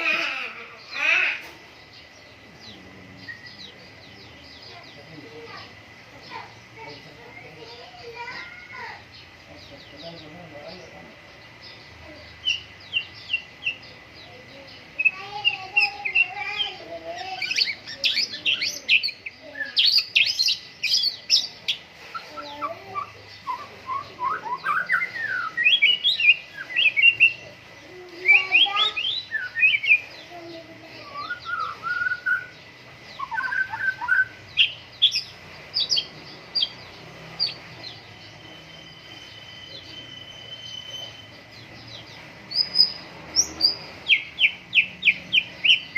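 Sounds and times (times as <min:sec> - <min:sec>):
bird singing whistles and trills: 0:17.4 - 0:27.4, 0:28.2 - 0:30.1, 0:31.0 - 0:45.9.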